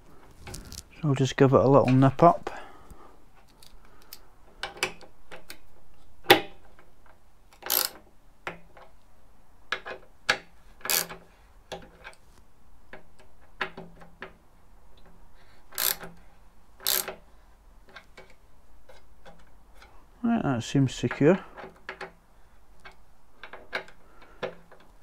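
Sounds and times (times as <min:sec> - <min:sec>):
metallic tool clicks: 0:07.5 - 0:08.0.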